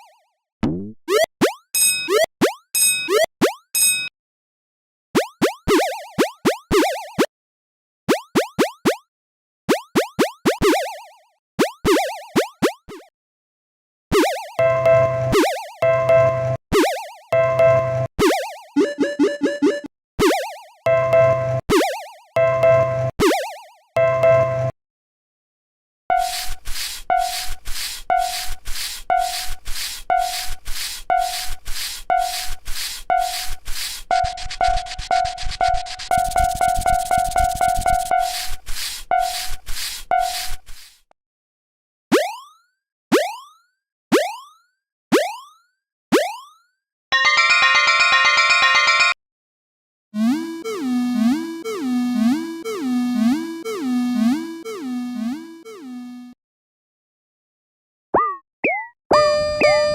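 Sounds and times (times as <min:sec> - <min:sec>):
scratchy swishing noise bursts: 0:26.2 - 0:41.0
cartoon rising bloop tones: 0:58.2 - 0:59.9
bell-like ding: 0:59.1 - 0:59.9.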